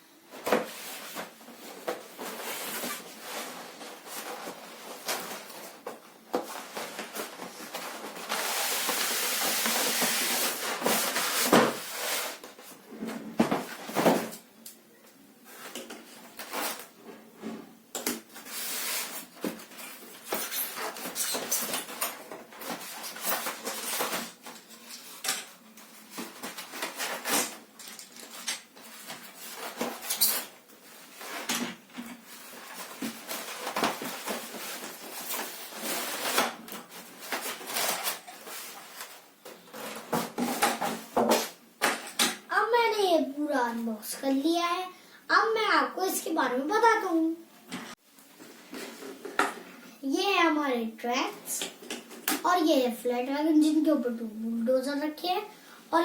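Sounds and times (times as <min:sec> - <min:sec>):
cardboard packaging rustling: 0:00.4 - 0:12.8, 0:18.4 - 0:41.6.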